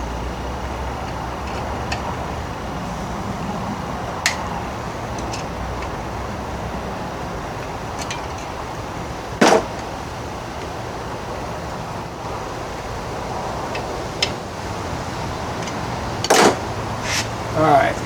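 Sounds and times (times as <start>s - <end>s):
sharp knocks of metal part: 9.4s - 9.8s.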